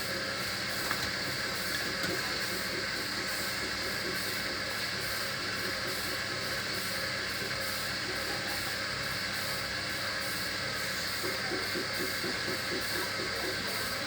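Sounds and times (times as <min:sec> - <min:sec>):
washing machine motor whine: 0:00.0 - 0:14.0.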